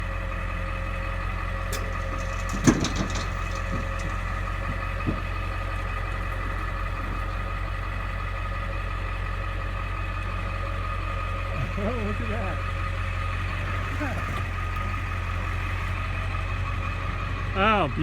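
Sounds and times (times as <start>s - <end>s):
knocks: 2.5s - 5.6s.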